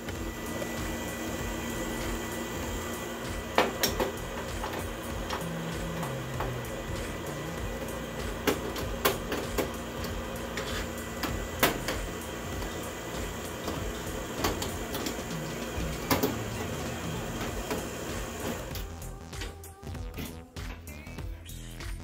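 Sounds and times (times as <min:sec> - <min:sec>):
furnace motor hum: 0:00.0 - 0:21.6.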